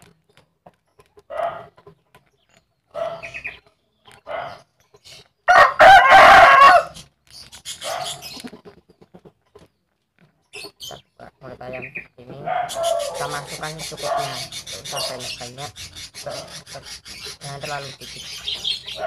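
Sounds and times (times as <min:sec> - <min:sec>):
rooster calling: 0:05.5 - 0:07.0, 0:12.4 - 0:15.6.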